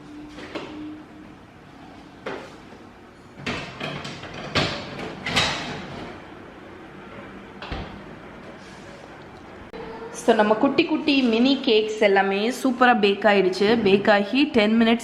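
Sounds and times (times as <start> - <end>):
oven door opening and closing: 3.4 - 6.3, 7.1 - 8.3.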